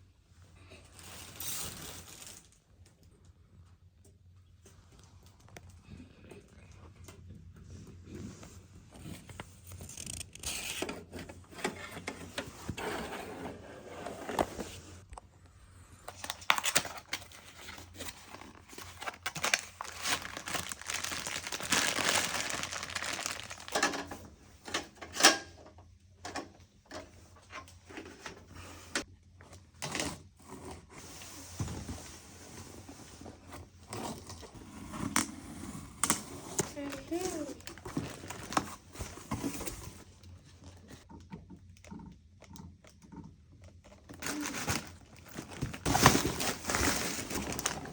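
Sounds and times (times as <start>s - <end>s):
packaging crinkling and tearing: 16.1s - 24.1s, 44.1s - 47.9s.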